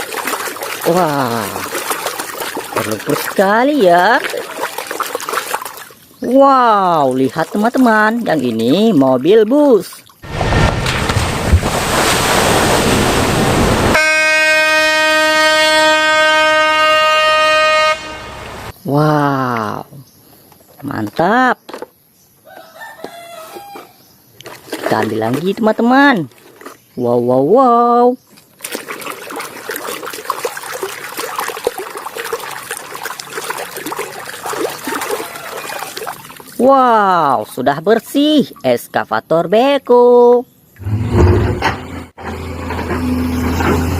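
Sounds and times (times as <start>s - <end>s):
water trickling and splashing: 0.0s - 14.0s, 23.0s - 39.0s
dense rushing noise: 10.2s - 14.0s
long steady horn blast: 13.9s - 18.7s.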